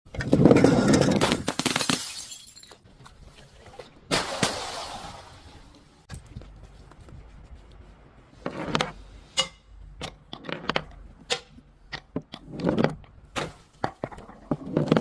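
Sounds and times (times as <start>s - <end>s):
glass bottle shattering: 0.6s - 2.8s.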